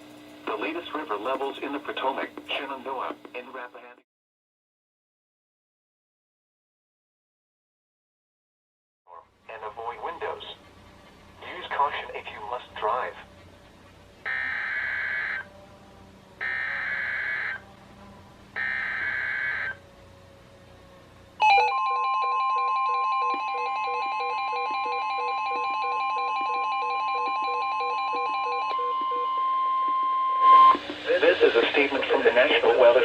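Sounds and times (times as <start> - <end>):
steady warning tone: 9.5 - 33.0
digital screech bursts: 14.3 - 15.4, 16.4 - 17.6, 18.6 - 19.8
pulsing alarm beeps: 14.3 - 15.5, 16.4 - 17.6, 18.6 - 19.8, 21.4 - 30.8.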